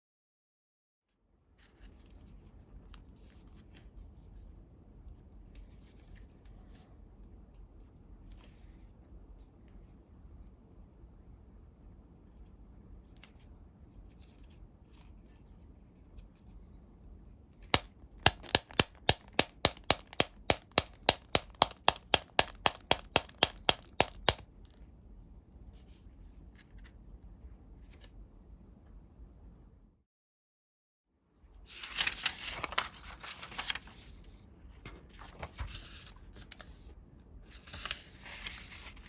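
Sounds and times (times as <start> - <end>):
paper handling: 17.7 - 24.8, 31.5 - 39.0
paper toy snapping: 17.7 - 24.8, 31.8 - 33.8.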